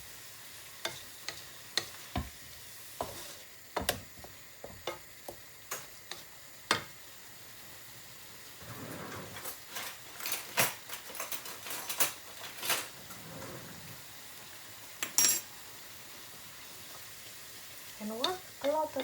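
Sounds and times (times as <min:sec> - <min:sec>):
faint sizzle: 0:00.0 - 0:19.0.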